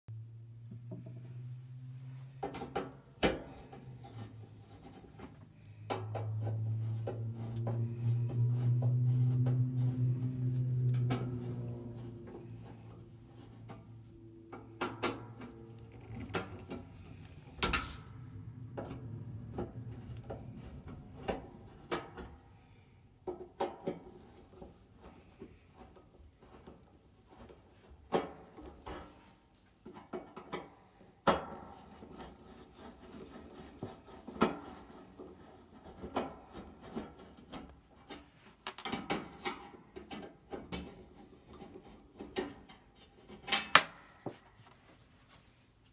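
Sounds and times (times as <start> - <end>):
faint low hum: 0.1 - 23.3.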